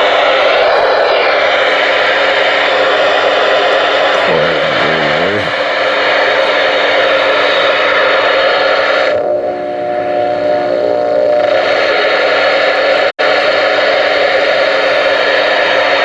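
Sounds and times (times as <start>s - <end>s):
radio static hiss: 0.0s - 16.0s
faint steady tones: 4.5s - 11.8s.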